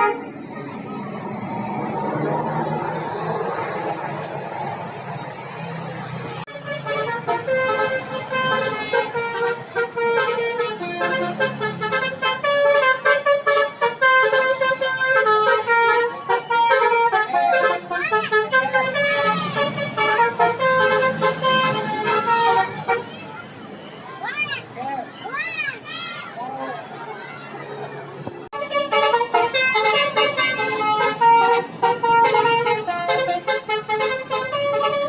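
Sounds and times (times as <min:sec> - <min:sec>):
multi-trumpet bus horn melody: 0:00.0 - 0:00.6, 0:06.3 - 0:23.2, 0:28.5 - 0:35.0.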